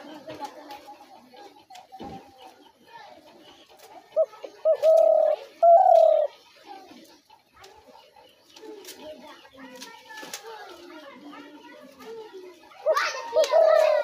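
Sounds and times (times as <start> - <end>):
dove cooing: 4.1 - 6.4, 12.8 - 14.0.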